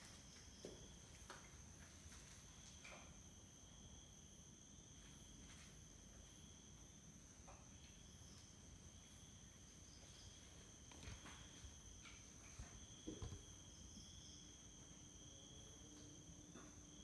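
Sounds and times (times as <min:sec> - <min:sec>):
insects chirring: 0:06.5 - 0:17.0.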